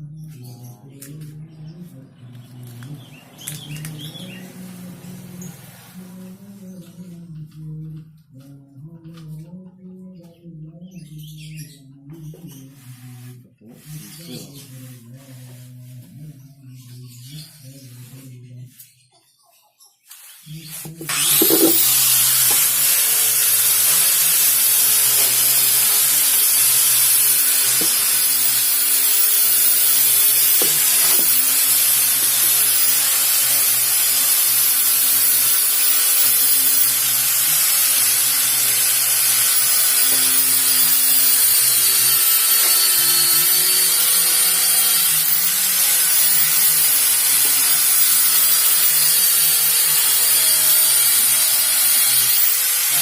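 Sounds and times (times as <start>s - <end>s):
power sander on wood: 12.6s - 16.0s, 20.2s - 53.0s.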